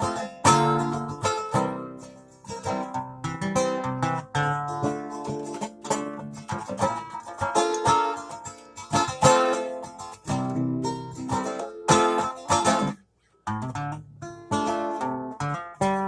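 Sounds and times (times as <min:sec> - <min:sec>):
guitar chords plucked and strummed: 0:00.0 - 0:16.0.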